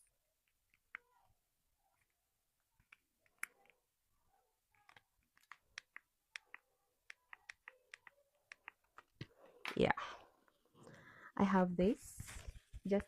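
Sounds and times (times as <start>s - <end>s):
small objects clicking and tapping: 1.9s - 3.8s, 4.7s - 9.8s.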